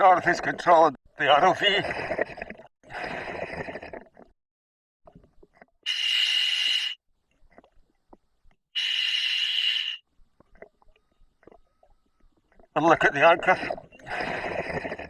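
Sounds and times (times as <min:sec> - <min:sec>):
scuba regulator hissing: 0:05.9 - 0:07.0, 0:08.8 - 0:10.0.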